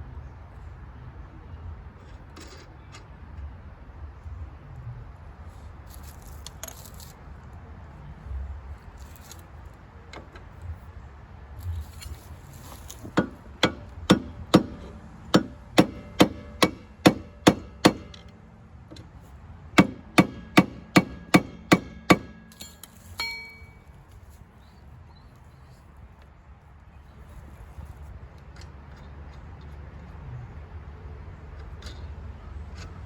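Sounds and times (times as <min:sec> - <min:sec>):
hammer striking metal: 0:13.2 - 0:18.3, 0:19.8 - 0:23.8
metallic ring: 0:21.8 - 0:24.0.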